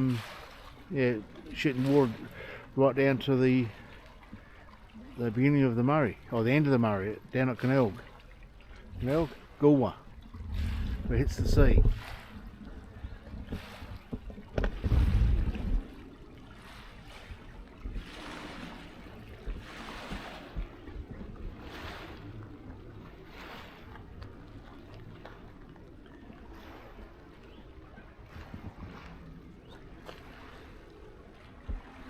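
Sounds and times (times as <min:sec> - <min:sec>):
wind buffeting microphone: 0:08.7 - 0:32.0.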